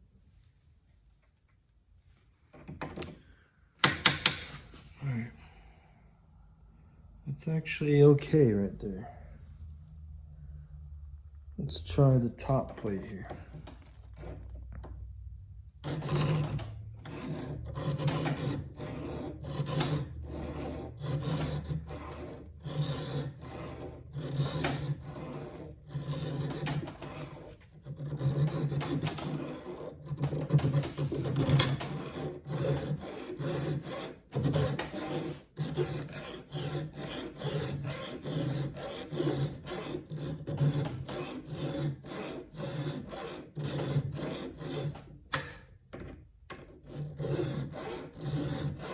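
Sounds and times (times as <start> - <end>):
hand file rasping on metal: 12.0 - 14.5, 15.8 - 45.7, 46.5 - 48.9.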